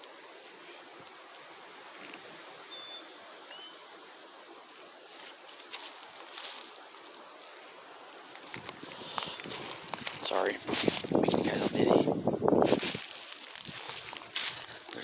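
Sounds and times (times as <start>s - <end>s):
footsteps through dry brush: 4.6s - 15.0s
wind noise: 8.4s - 15.0s.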